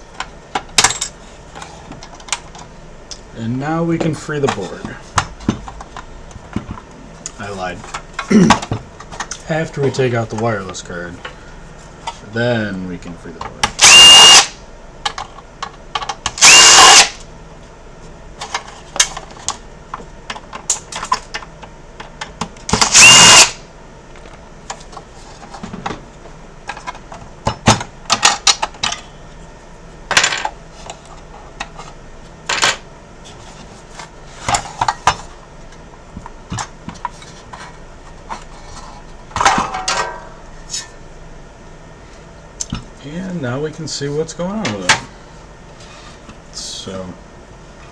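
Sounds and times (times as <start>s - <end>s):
electric screwdriver whirring: 13.8s - 14.6s, 16.4s - 17.2s, 22.7s - 23.6s.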